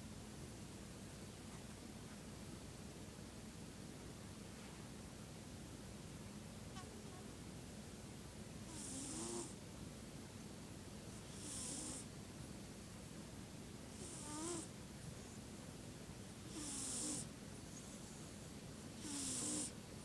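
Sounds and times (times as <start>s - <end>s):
snoring: 8.7s - 9.6s, 11.3s - 12.1s, 14.0s - 14.7s, 16.5s - 17.3s, 19.0s - 19.8s.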